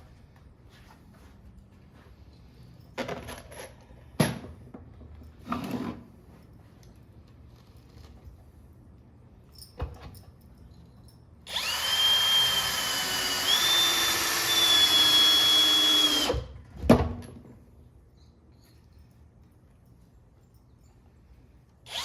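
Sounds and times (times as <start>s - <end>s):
cordless drill driving screw: 11.5s - 16.5s.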